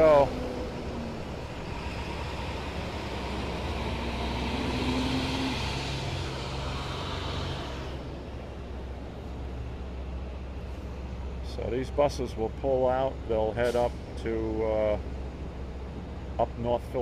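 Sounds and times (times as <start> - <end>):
diesel bus engine pulling away: 0.0 - 11.6.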